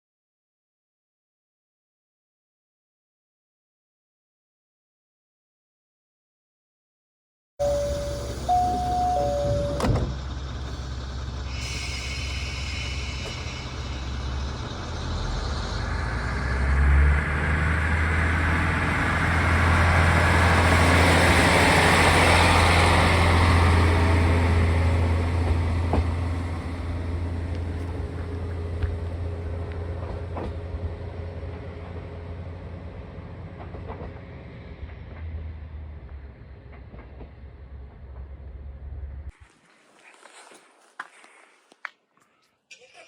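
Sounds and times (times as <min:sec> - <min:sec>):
high steady tones: 0:07.6 - 0:14.5
diesel train engine drone: 0:07.6 - 0:39.3.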